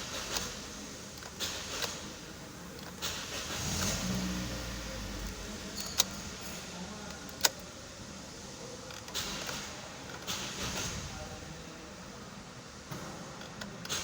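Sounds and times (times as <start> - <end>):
starter motor spinning: 0.2 - 7.5.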